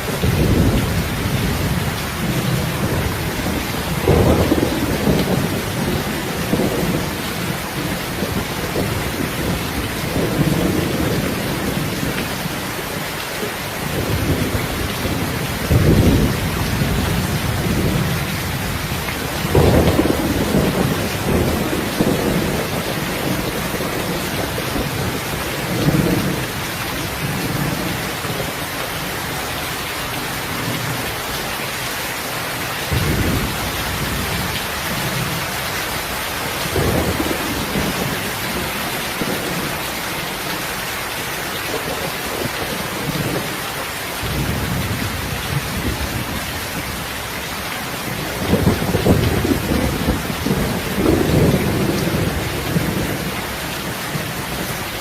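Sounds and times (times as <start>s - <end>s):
low rumbles of thunder: 0.0s - 12.5s, 13.8s - 28.6s, 32.9s - 35.4s, 36.6s - 39.8s, 44.2s - 47.0s, 48.0s - 54.7s
steady rain falling: 0.0s - 55.0s.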